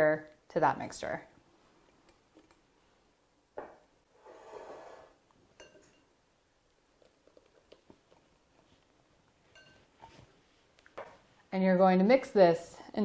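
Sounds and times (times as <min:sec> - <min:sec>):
soft scraping in bowl: 0:04.1 - 0:05.2
utensil clinking against bowl: 0:09.5 - 0:09.9.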